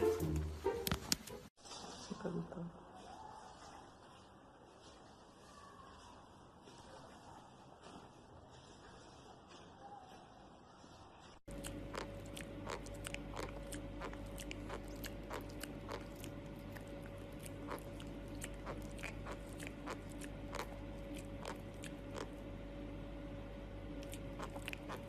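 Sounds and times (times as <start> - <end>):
animal crunching food: 11.5 - 22.6, 23.9 - 25.0
low hum: 11.5 - 25.0.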